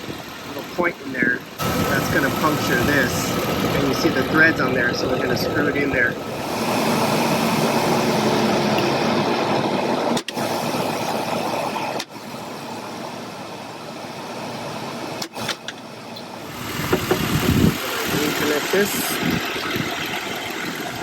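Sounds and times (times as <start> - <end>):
car engine idling: 0.0 - 7.9, 16.3 - 21.0
air conditioning running: 0.0 - 8.4, 12.7 - 21.0.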